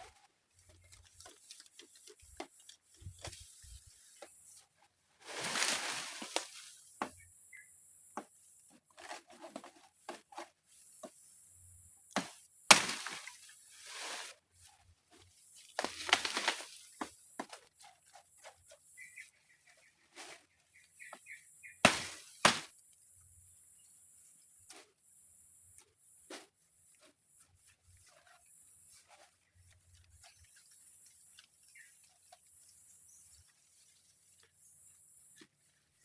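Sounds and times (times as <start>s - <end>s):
rustling: 0.0s - 7.2s, 12.7s - 21.1s, 26.3s - 36.0s.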